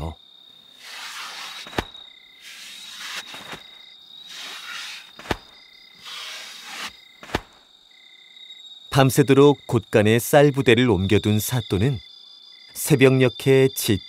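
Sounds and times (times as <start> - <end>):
crickets and insects chirping: 0.0 - 14.0
high continuous insect trill: 0.0 - 14.0
soft swish: 0.8 - 7.6
sharp single knocks: 5.2 - 5.6, 7.2 - 7.6.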